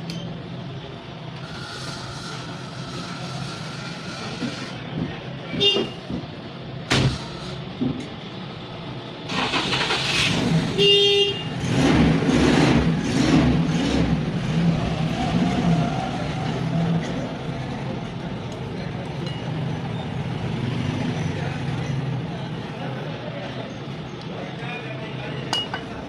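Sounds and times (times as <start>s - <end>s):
road traffic: 0.0s - 26.0s
vehicle horn beeps: 5.5s - 6.0s, 10.7s - 11.6s.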